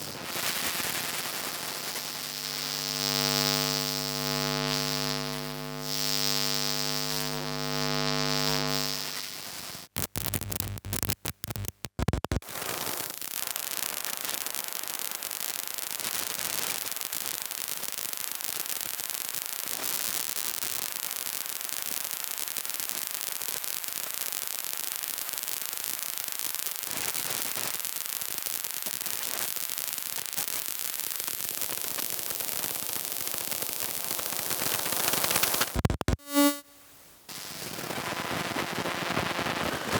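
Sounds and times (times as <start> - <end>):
buzzing electrical hum: 0.0 - 12.4, 34.6 - 39.5
static hiss: 0.0 - 20.2, 20.8 - 39.9
stuttering clicks: 10.0 - 12.4, 34.7 - 36.2.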